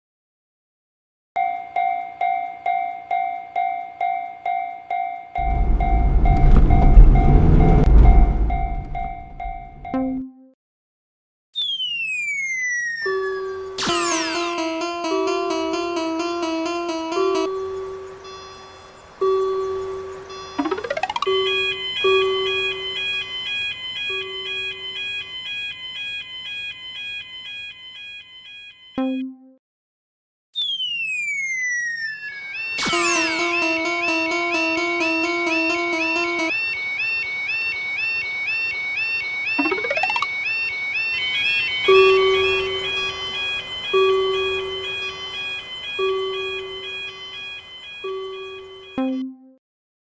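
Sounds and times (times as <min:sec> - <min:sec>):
electronic crossing bell ringing: 0:01.4 - 0:10.0, 0:13.1 - 0:29.0, 0:32.4 - 0:49.2
short low note: 0:05.4 - 0:09.6
low held tone: 0:05.4 - 0:10.0.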